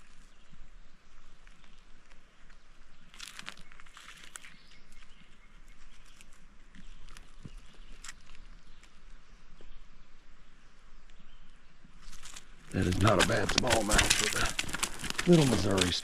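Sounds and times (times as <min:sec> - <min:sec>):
splashing and scuffling: 0:12.1 - 0:16.0.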